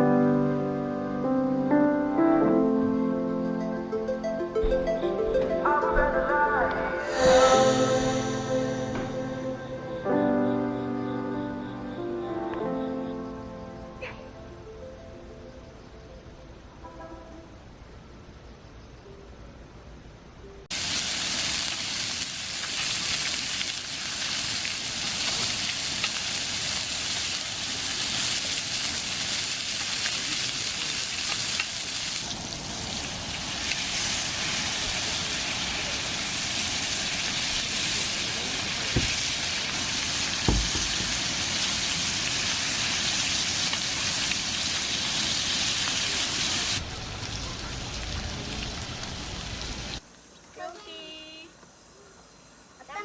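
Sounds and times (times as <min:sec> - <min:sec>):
food sizzling in a pan: 0:20.7 - 0:50.0.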